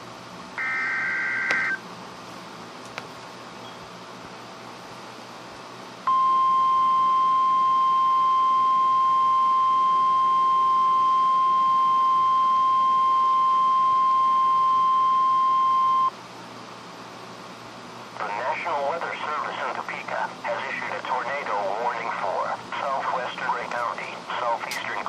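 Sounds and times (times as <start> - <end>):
high steady alarm beep: 0.6 - 1.8, 6.1 - 16.1
faint radio hiss: 18.1 - 25.0.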